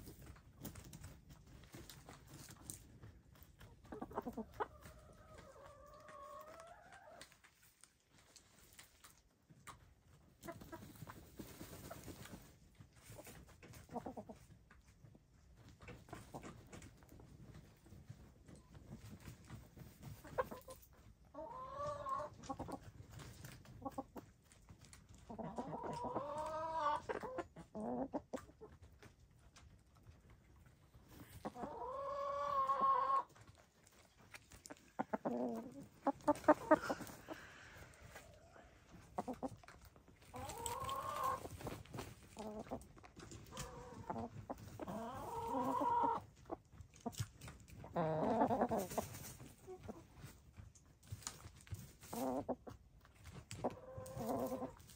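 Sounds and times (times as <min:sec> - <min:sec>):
hens calling: 0:31.4 - 0:33.4, 0:34.6 - 0:39.6, 0:40.2 - 0:41.7, 0:43.5 - 0:46.6.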